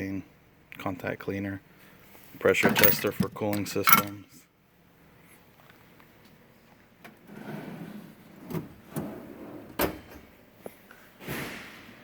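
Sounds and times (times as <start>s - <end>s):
metal drawers sliding: 2.5s - 4.1s
sharp metallic clunks: 2.6s - 4.1s.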